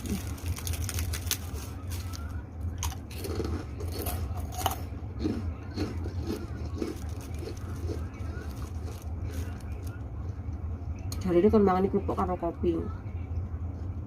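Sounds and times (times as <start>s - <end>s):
person chewing crunchy crackers: 0.0s - 10.4s
low hum: 0.0s - 14.0s.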